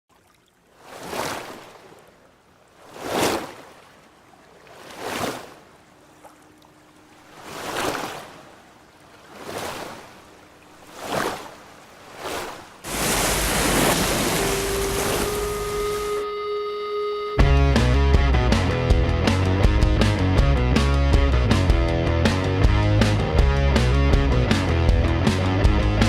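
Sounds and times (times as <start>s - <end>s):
surf washing in: 7.2s - 16.2s
loud steady rush of noise: 12.9s - 16.2s.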